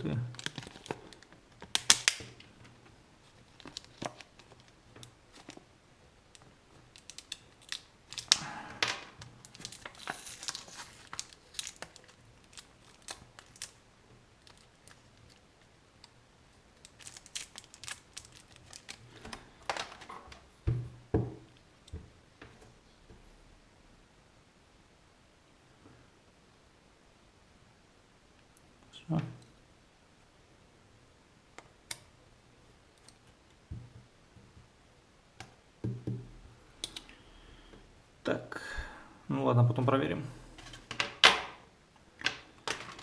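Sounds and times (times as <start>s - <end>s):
plastic packaging crinkling: 0.1s - 2.5s, 3.2s - 5.7s, 6.3s - 8.4s, 9.2s - 13.8s, 14.4s - 16.1s, 16.7s - 20.4s, 42.3s - 43.0s.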